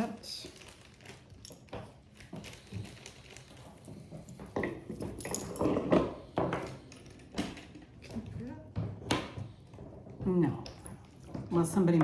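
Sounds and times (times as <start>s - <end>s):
jewelry clinking on a table: 3.6s - 7.7s.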